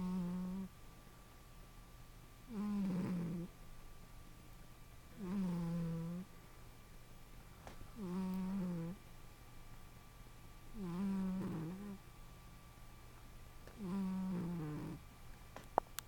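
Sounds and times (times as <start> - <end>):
cat snoring: 0.0 - 0.7, 2.5 - 3.5, 5.2 - 6.3, 8.0 - 9.0, 10.7 - 12.0, 13.8 - 15.0.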